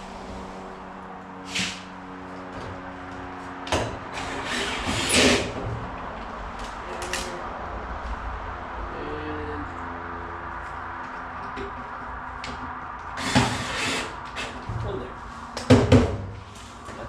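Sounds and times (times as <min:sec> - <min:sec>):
steady hum: 0:00.0 - 0:15.6.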